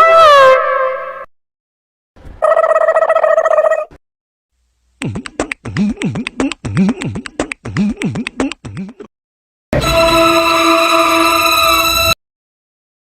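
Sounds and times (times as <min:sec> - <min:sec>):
beatbox-style beat: 0:05.0 - 0:09.1.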